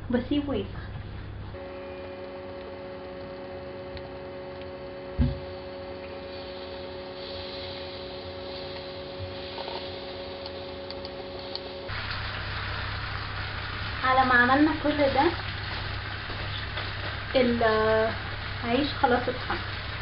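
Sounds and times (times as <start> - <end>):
electrical hum: 0.0 - 20.0
dull thump: 5.2 - 5.4.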